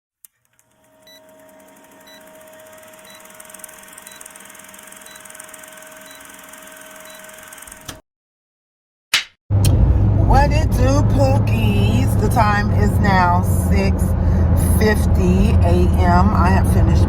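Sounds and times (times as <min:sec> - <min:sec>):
short high beeps: 0:01.0 - 0:01.3, 0:02.0 - 0:02.3, 0:03.0 - 0:03.4, 0:04.0 - 0:04.4, 0:05.0 - 0:05.4, 0:06.0 - 0:06.4, 0:07.0 - 0:07.3
steady hum: 0:09.6 - 0:17.0.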